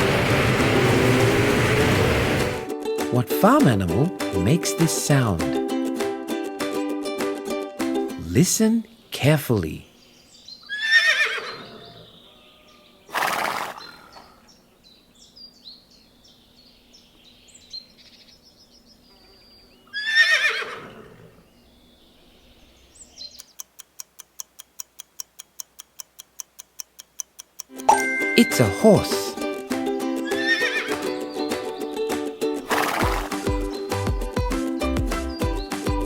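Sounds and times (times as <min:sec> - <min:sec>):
horse whinnying: 0:10.7 - 0:14.4, 0:19.9 - 0:21.4, 0:30.3 - 0:31.0, 0:32.7 - 0:33.3
rapid even ticking: 0:23.4 - 0:27.9
faint high chirps: 0:27.8 - 0:29.4.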